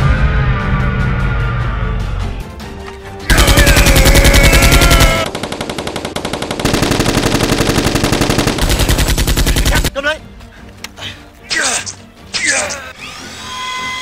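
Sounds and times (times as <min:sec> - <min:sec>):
action music: 0:00.0 - 0:14.0
rapid automatic gunfire: 0:03.3 - 0:09.9.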